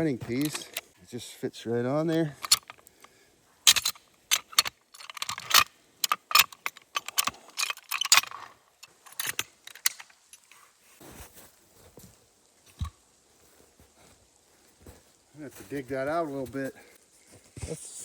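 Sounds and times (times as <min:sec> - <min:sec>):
jack metal clicks and clanks: 0:00.0 - 0:01.0, 0:02.1 - 0:03.0, 0:03.7 - 0:10.6.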